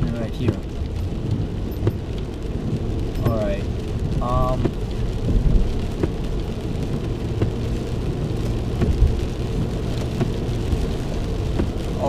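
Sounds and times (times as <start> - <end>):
road and engine rumble: 0.0 - 12.0.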